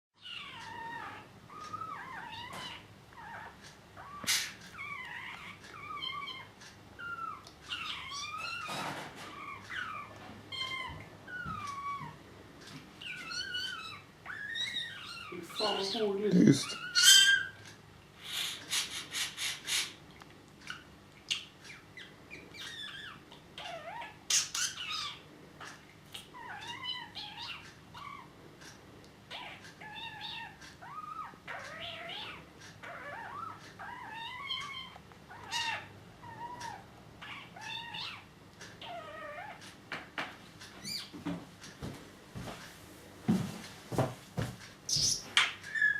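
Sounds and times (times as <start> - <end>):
budgerigar chirping and warbling: 0.2 - 8.7, 13.0 - 17.6, 20.7 - 25.2, 26.2 - 28.3, 29.3 - 39.6, 40.8 - 41.1, 44.9 - 45.9.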